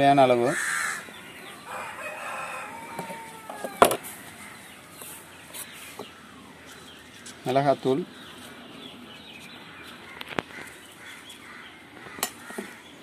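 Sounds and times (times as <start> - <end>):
rooster crowing: 1.6 - 4.6.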